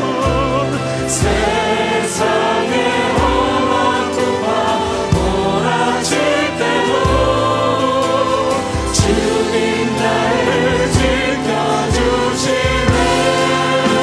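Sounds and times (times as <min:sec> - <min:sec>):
worship song with singers and band: 0:00.0 - 0:14.0
low drum beat: 0:05.0 - 0:06.0, 0:08.8 - 0:09.6, 0:10.5 - 0:14.0.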